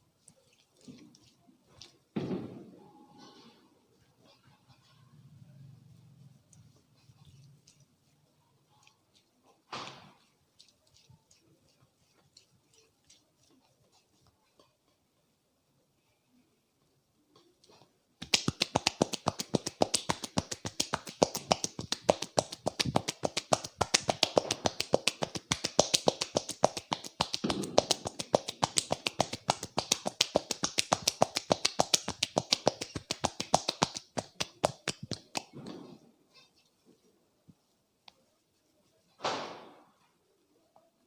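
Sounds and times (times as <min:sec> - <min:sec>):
hands slapping scalp: 0:18.2 - 0:35.6.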